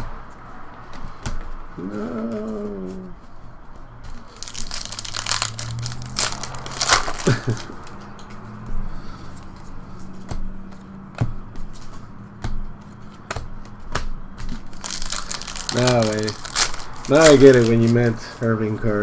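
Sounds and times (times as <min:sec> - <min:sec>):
cards being handled: 0:03.7 - 0:19.0
card pack wrappers crinkling: 0:04.1 - 0:08.1, 0:14.5 - 0:19.0.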